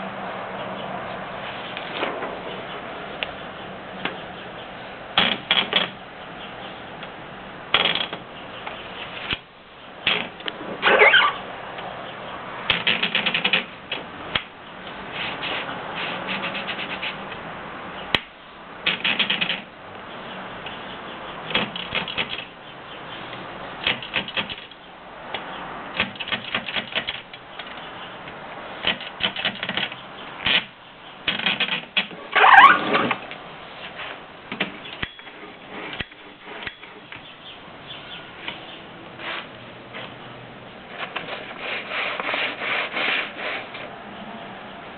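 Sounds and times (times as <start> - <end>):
typewriter typing: 12.7 - 13.7, 18.9 - 19.7, 21.5 - 22.5, 23.8 - 24.7, 26.0 - 27.2, 28.8 - 30.7.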